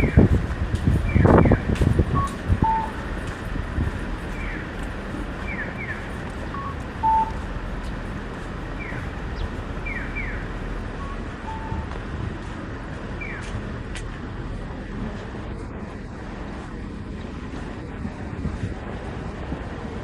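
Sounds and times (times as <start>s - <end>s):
street noise: 0.0s - 20.0s
electronic crossing signal chirps: 1.0s - 3.0s, 5.4s - 7.4s, 8.8s - 11.9s.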